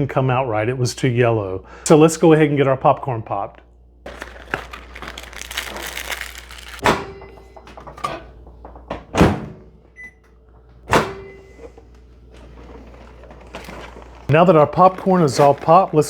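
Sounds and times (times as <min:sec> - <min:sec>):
microwave door thuds: 0:06.8 - 0:09.7, 0:10.9 - 0:11.4.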